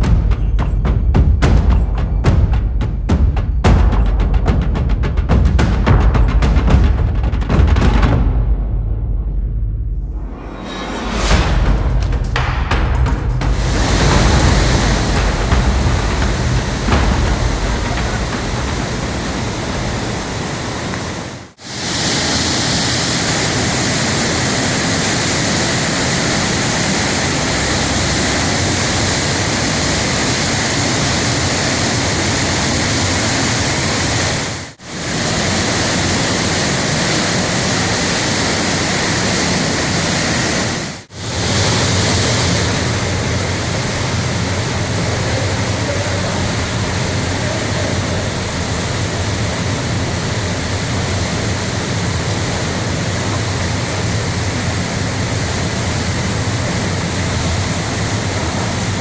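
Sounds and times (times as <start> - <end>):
waterfall rushing: 10.2 - 59.0.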